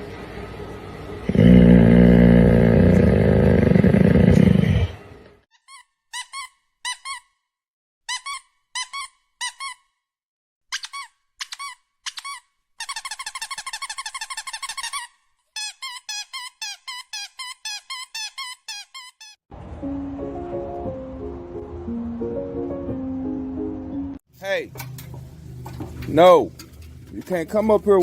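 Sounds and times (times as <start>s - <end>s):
loud low droning: 1.3s - 4.8s
squeaky dog toy squeaking: 5.6s - 7.4s, 8.1s - 10.0s, 10.7s - 19.4s.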